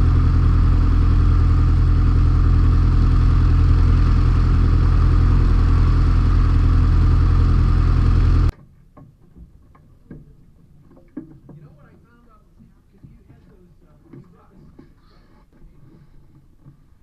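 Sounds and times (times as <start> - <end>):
light aircraft engine and propeller: 0.0 - 8.5.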